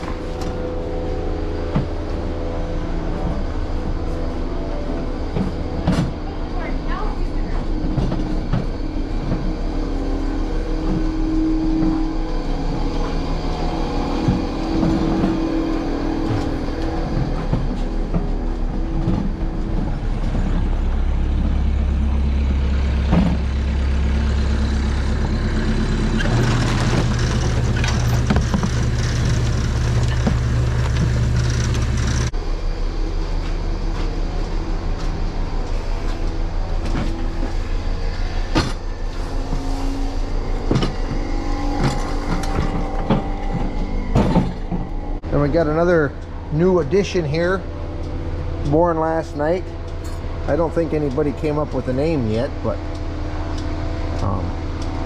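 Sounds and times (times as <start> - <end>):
deeper machine drone: 0.0 - 55.0
electric motor running: 24.9 - 32.3.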